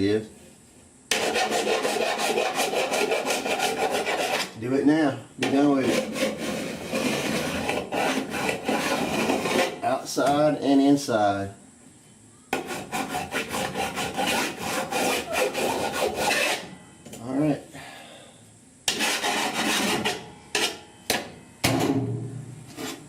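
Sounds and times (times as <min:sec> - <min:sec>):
hand file scraping metal: 0:01.1 - 0:04.6, 0:05.4 - 0:09.8, 0:12.5 - 0:16.8, 0:18.9 - 0:20.8, 0:22.7 - 0:23.0.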